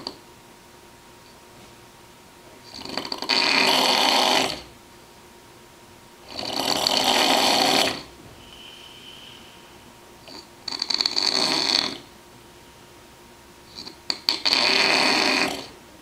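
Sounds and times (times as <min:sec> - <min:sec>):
person snoring: 0:02.7 - 0:04.7, 0:06.2 - 0:12.1, 0:13.7 - 0:15.8.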